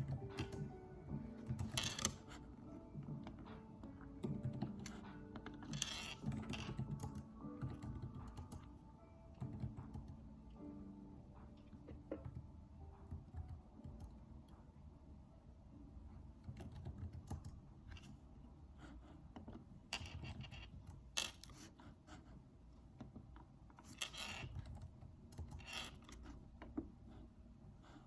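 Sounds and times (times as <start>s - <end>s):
typing on computer keyboard: 0.0s - 0.8s, 1.4s - 2.4s, 4.2s - 8.7s, 9.3s - 10.2s, 12.1s - 14.2s, 16.4s - 18.1s, 23.8s - 26.4s.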